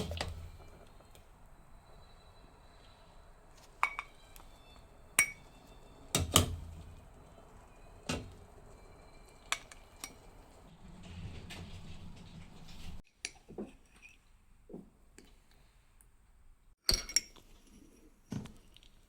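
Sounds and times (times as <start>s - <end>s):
spoon clinking against bowls: 3.8s - 4.5s, 5.2s - 5.6s, 9.4s - 10.4s.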